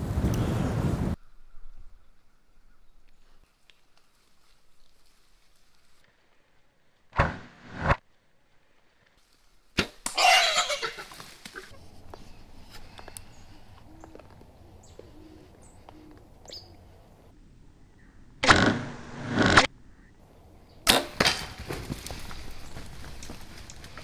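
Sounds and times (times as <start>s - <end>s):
rustling noise: 3.2s - 6.5s, 9.1s - 13.0s, 20.9s - 24.0s
sharp crack: 9.8s - 11.8s, 18.4s - 19.7s, 20.9s - 24.0s
arrow whooshing: 20.9s - 24.0s.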